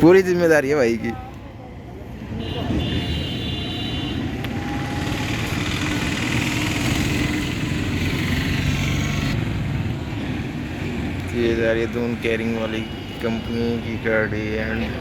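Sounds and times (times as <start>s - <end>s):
street noise: 0.0s - 15.0s
vehicle engine running: 4.4s - 9.9s.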